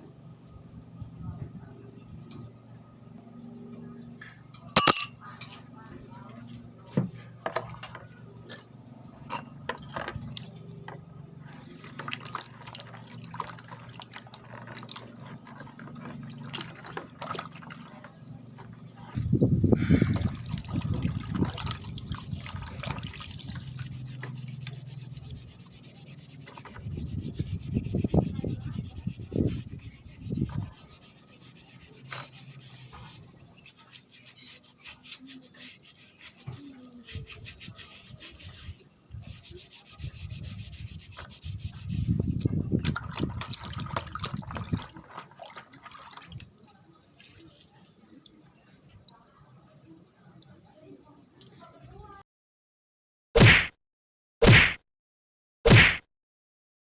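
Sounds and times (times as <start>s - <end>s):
rubbing on metal: 23.6s - 42.5s.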